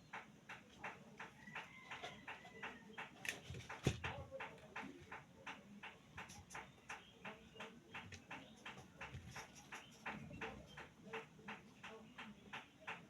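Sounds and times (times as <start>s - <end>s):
steady rhythmic ticking: 0.0s - 13.0s.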